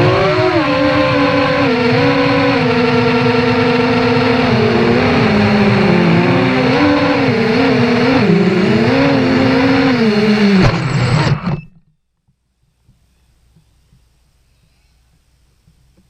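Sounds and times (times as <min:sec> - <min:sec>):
quadcopter motors whining: 0:00.0 - 0:11.7.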